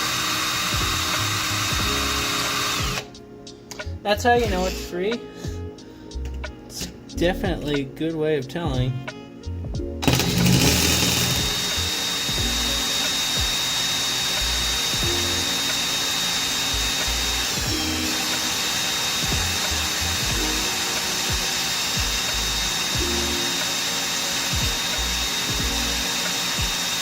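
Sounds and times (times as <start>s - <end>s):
electric tool motor whining: 0.0s - 3.1s, 10.0s - 27.0s
background music with bass: 0.0s - 27.0s.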